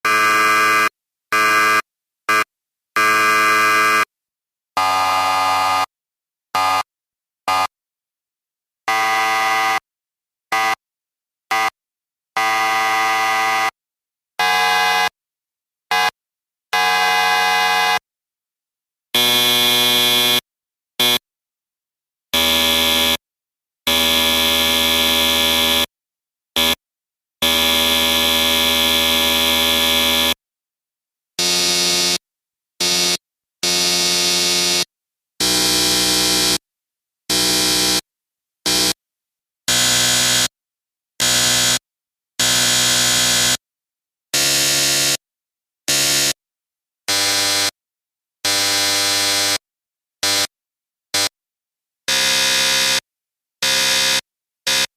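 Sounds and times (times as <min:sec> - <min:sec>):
electric buzzers buzzing: 0:31.4 - 0:32.2, 0:32.8 - 0:36.6, 0:37.3 - 0:38.0, 0:38.7 - 0:39.0, 0:39.7 - 0:40.6, 0:41.2 - 0:41.8, 0:42.4 - 0:43.6, 0:44.4 - 0:45.2, 0:47.1 - 0:47.8, 0:52.1 - 0:53.0, 0:53.6 - 0:54.9.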